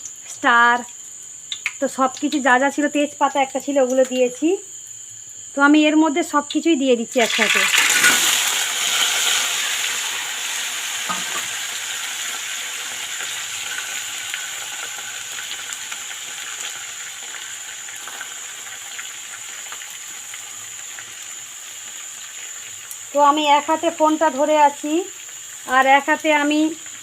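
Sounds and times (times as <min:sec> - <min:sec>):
vegetables sizzling in hot oil: 0:00.0 - 0:27.0.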